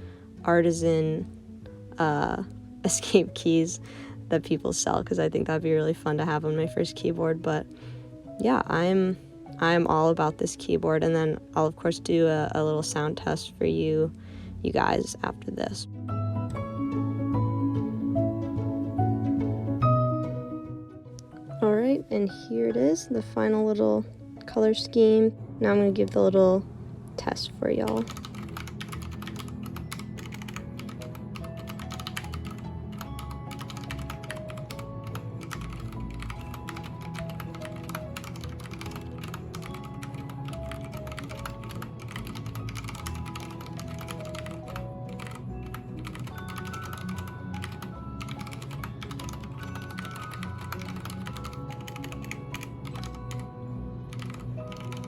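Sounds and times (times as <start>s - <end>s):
background music: 0.0s - 55.0s
mechanical keyboard typing: 27.8s - 53.4s, 54.1s - 55.0s.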